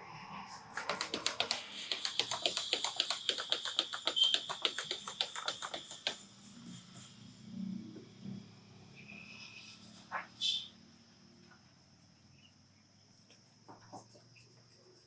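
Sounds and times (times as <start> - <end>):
hands slapping on a head: 0.7 - 6.2.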